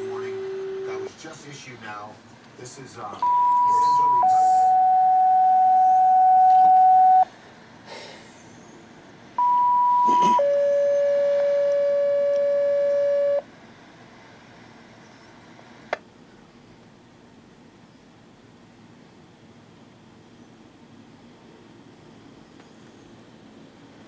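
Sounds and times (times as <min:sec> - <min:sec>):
two-tone radio paging tones: 0:00.0 - 0:01.1, 0:03.2 - 0:07.3, 0:09.4 - 0:13.4.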